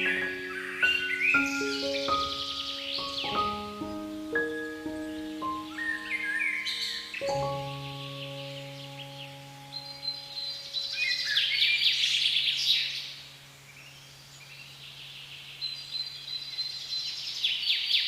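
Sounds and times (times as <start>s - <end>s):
small birds chirping: 0.0s - 18.0s
low sustained note: 6.4s - 15.5s.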